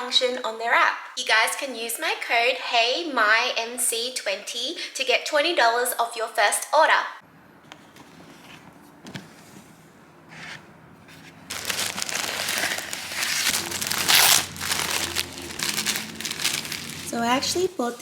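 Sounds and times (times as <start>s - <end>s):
packaging crinkling and rustling: 11.1s - 17.7s.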